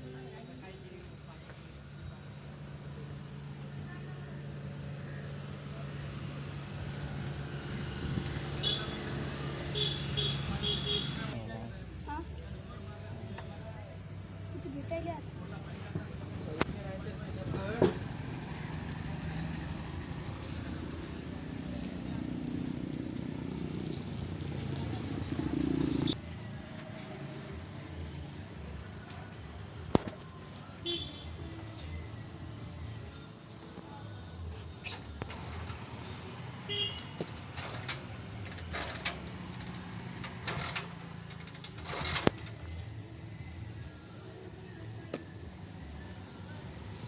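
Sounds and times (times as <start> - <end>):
motorcycle engine running: 16.4 - 26.2.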